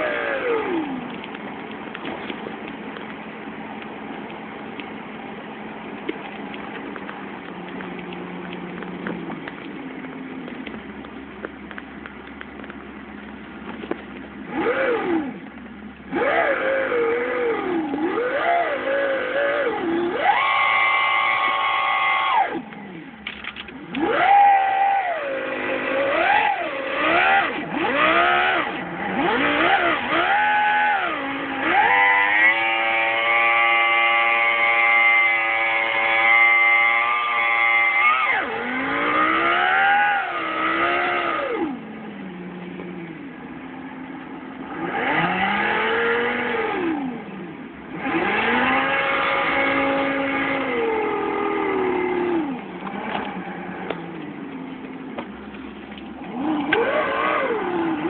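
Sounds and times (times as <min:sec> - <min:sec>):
synthesized race engine revving: 0:00.0 - 0:01.3, 0:14.4 - 0:15.5, 0:16.1 - 0:23.2, 0:23.8 - 0:54.8, 0:55.5 - 0:58.0.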